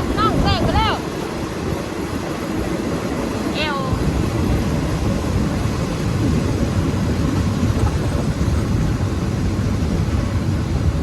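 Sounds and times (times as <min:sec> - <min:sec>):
train wheels rumbling on track: 0:00.0 - 0:11.0.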